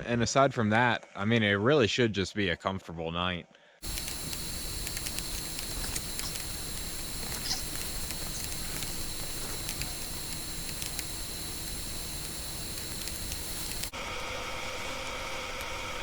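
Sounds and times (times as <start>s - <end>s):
light ticks: 3.8s - 13.9s
faint high whine: 3.8s - 16.0s
steady hiss: 3.8s - 16.0s.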